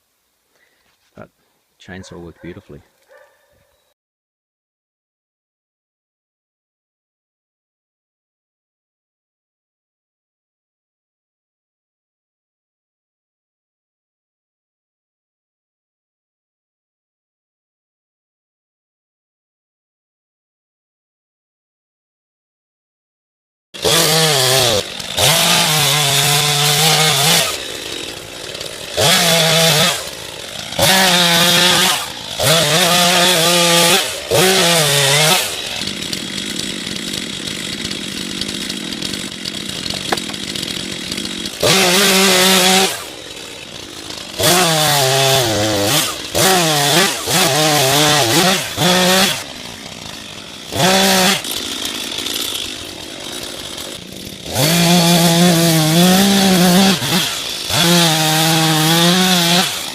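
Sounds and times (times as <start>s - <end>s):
chainsaw cutting wood: 23.8s - 59.9s.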